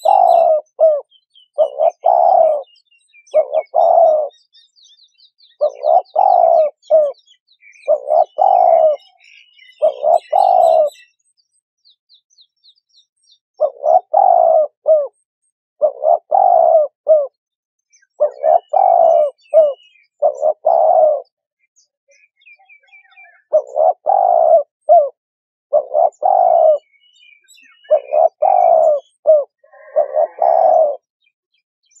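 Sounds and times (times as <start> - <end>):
dove cooing: 0.0 - 4.4, 5.5 - 11.1, 13.6 - 17.4, 18.1 - 21.4, 23.0 - 31.1
faint high-pitched bird chirps: 0.0 - 32.0.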